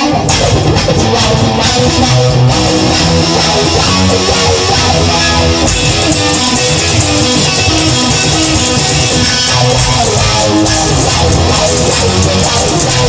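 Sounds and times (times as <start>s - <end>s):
instrumental rock music: 0.0s - 13.0s.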